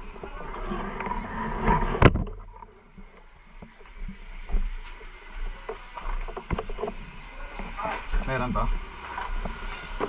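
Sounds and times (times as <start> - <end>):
rustling noise: 0.0 - 10.0
faint clicks and knocks: 0.9 - 8.3.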